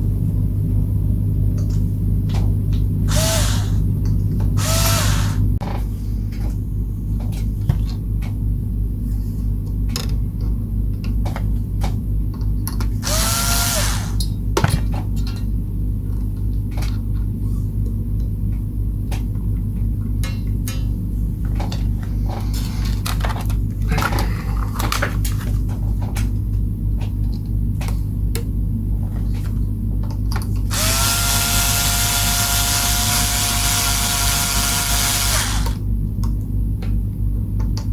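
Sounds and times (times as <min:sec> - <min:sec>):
power tool motor humming: 0:03.1 - 0:03.8, 0:04.6 - 0:05.5, 0:13.0 - 0:14.2, 0:30.7 - 0:35.8
tool spinning up whir: 0:03.1 - 0:03.8, 0:04.6 - 0:05.5, 0:13.0 - 0:14.2, 0:30.7 - 0:35.8.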